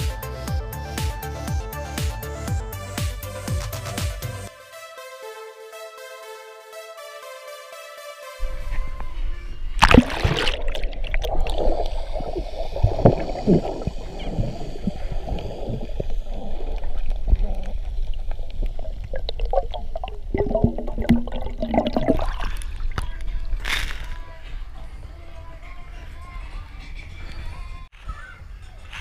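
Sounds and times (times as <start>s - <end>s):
sharp water splash: 9.8s - 14.4s
sea water sloshing and gurgling: 9.8s - 23.7s.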